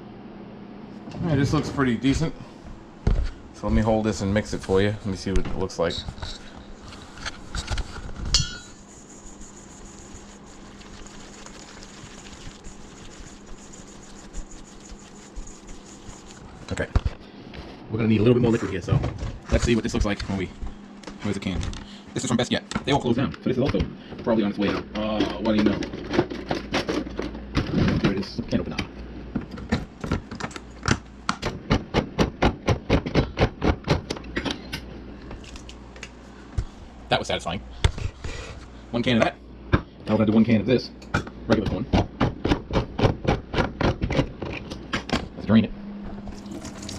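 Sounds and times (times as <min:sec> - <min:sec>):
utensil stirring batter in bowl: 0:07.8 - 0:17.1
utensil clinking against bowl: 0:08.4 - 0:08.8.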